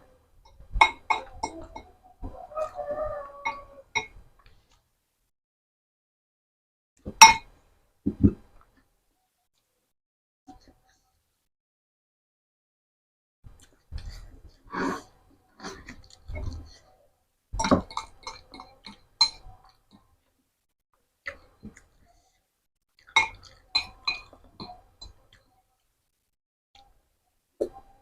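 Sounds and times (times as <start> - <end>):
spoon clinking against bowl: 23.2 - 25.2.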